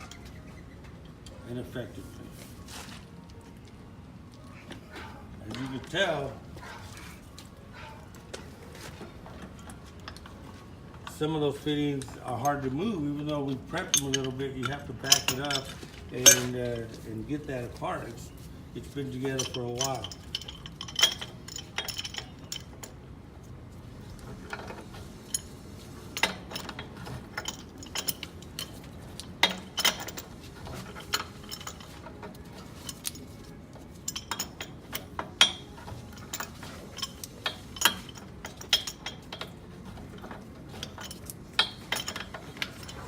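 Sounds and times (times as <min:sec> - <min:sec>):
wrenches clinking on pipe fittings: 0:11.0 - 0:23.0, 0:24.2 - 0:43.0.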